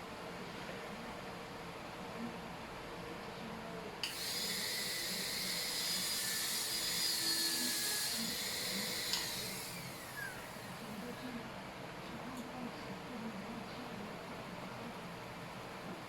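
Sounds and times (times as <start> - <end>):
dental drill whining: 4.0 - 11.0.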